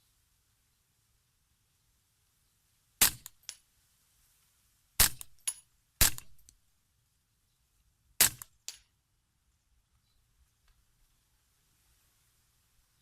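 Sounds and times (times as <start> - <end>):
suppressed rifle shots: 3.0 - 3.6, 5.0 - 6.5, 8.2 - 8.8.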